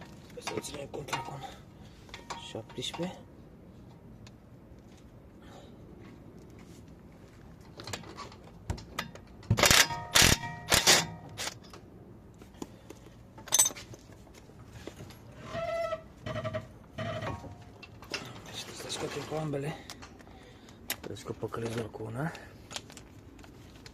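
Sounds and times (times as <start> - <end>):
wrenches striking metal bolts: 0.4 - 1.6.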